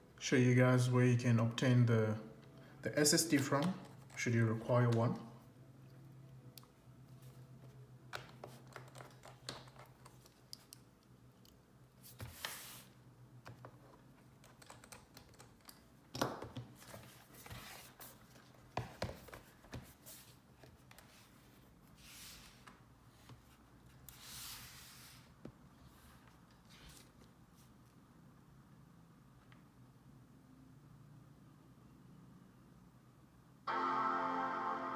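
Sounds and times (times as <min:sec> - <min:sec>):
hands handling laptop and tools: 0:07.2 - 0:21.5.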